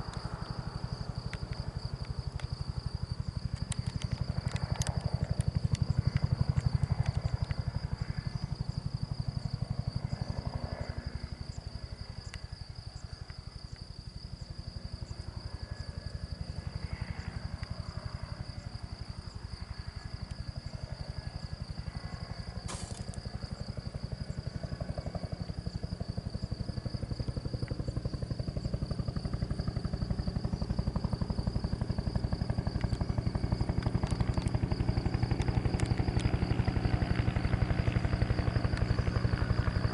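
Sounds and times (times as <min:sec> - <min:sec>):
helicopter rotor beating: 0:00.0 - 0:39.9
turbine whine: 0:00.0 - 0:39.9.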